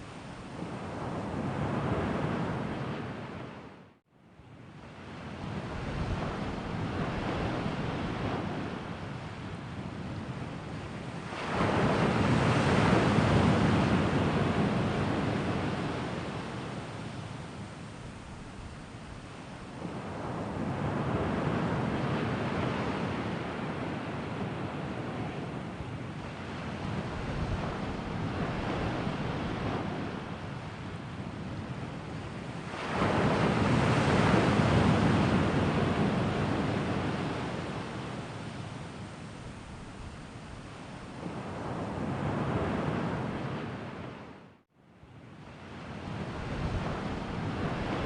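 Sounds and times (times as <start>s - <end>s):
sea waves washing in: 10.6s - 44.6s, 45.3s - 48.0s.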